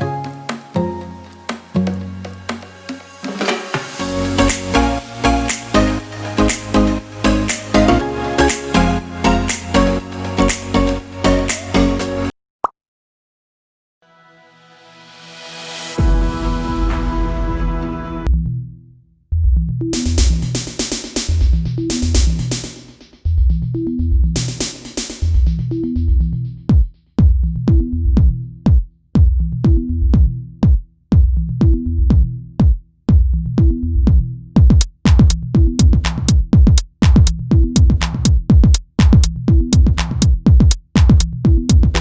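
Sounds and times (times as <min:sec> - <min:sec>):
electronic dance music: 0:00.5 - 0:12.3, 0:34.6 - 0:42.0.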